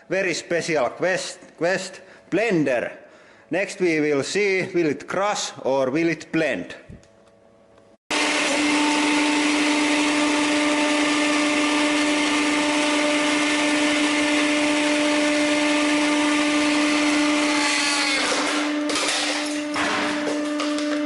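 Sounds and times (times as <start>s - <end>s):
mixer grinder motor whirring: 8.1s - 21.0s.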